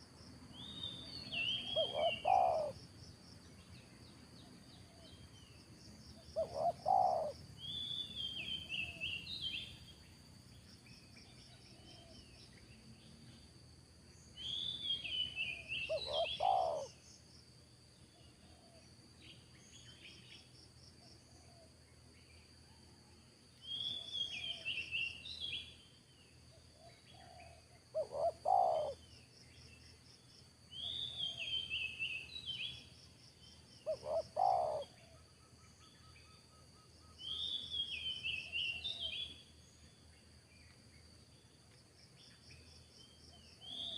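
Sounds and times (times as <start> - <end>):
bird chirping song: 0.0 - 43.9
faint insect trill: 0.0 - 43.9
dove cooing: 1.4 - 2.8, 6.4 - 7.4, 15.5 - 17.0, 27.1 - 29.0, 33.8 - 35.1.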